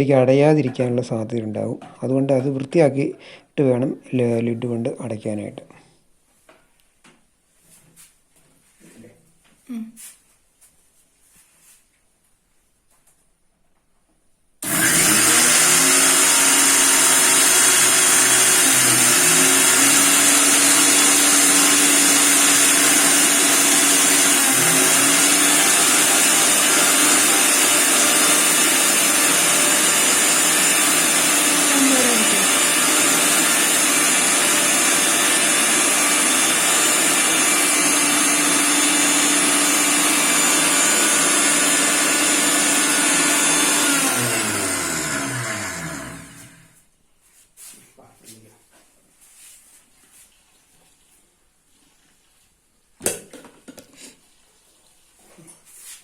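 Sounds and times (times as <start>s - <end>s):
mixer grinder motor whining: 14.6s - 46.8s.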